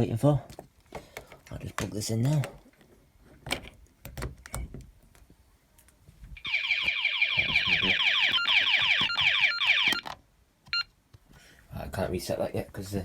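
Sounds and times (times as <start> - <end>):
fire alarm sweeping tone: 6.4 - 10.0.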